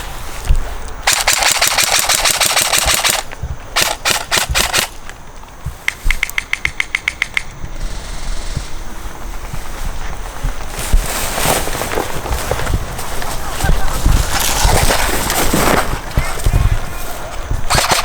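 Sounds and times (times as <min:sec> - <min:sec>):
airsoft guns firing full-auto: 0:01.0 - 0:05.0, 0:17.7 - 0:18.0.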